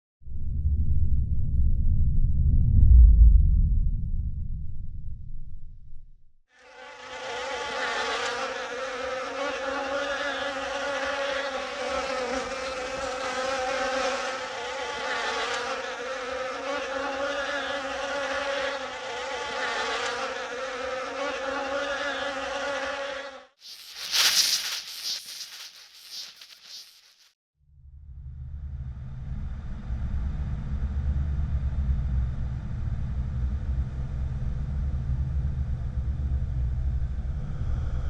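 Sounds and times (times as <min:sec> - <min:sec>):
flying insects buzzing: 0:23.6 - 0:27.4.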